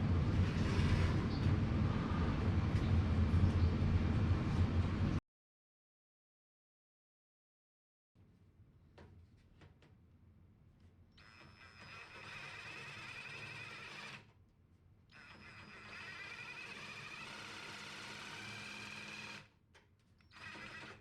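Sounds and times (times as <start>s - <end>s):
electric power tool whining: 11.2s - 14.2s, 15.1s - 19.5s.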